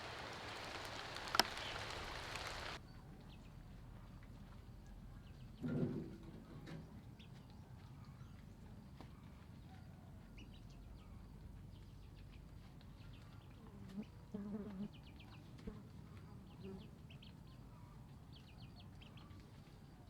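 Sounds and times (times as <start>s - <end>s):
poultry calls: 0.0s - 2.8s
small birds chirping: 0.0s - 3.5s, 10.4s - 20.0s.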